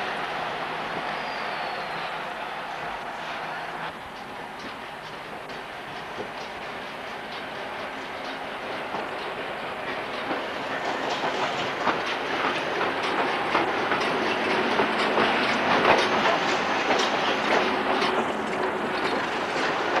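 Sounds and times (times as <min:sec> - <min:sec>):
train wheels clattering over rail joints: 0:03.9 - 0:20.0.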